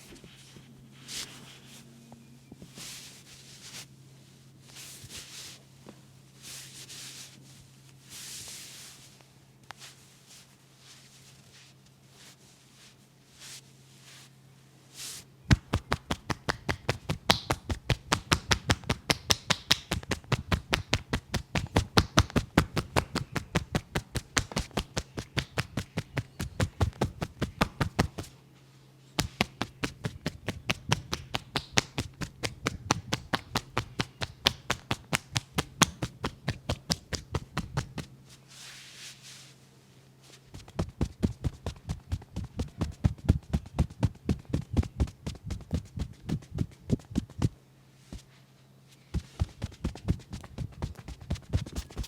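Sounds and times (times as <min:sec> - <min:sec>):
hands slapping in massage: 0:15.5 - 0:28.3, 0:29.2 - 0:38.1, 0:40.5 - 0:48.3, 0:49.1 - 0:52.0.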